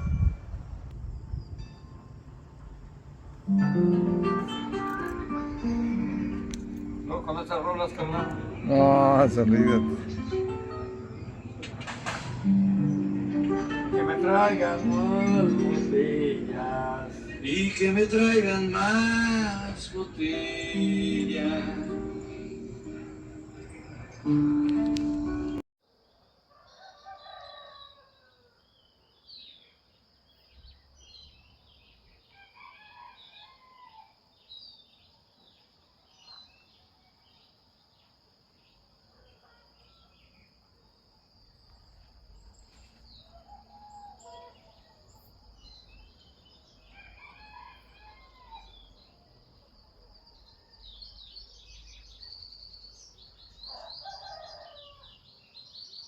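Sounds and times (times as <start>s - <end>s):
rooster crowing: 26.5s - 28.7s, 32.3s - 34.2s, 43.2s - 45.1s, 46.8s - 49.1s, 53.7s - 55.2s
small birds chirping: 41.4s - 56.0s.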